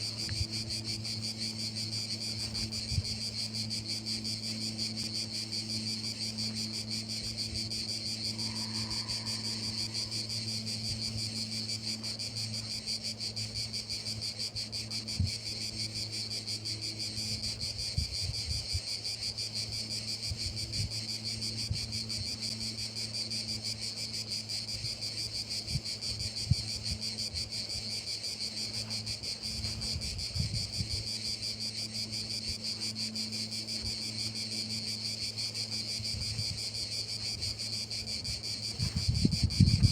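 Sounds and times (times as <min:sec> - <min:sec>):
low hum: 0:00.0 - 0:13.6
crickets trilling: 0:00.0 - 0:39.9.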